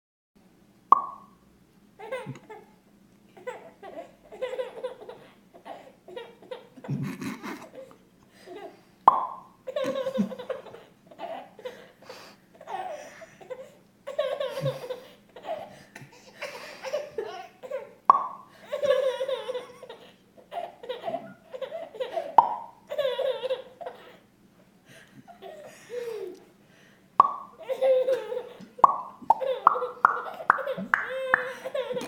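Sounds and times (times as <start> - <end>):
sharp popping: 0.9 - 1.4, 9.1 - 9.5, 18.1 - 18.5, 22.4 - 22.8, 27.2 - 27.6, 28.8 - 31.1
person laughing: 6.8 - 7.7.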